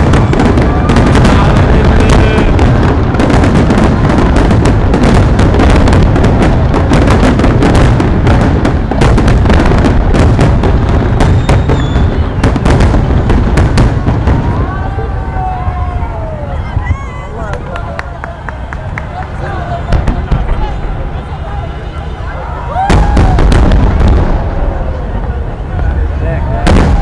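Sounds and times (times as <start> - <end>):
low rumble of booms: 0.0 - 16.0, 22.8 - 27.0
fireworks cracks and bangs: 0.0 - 27.0.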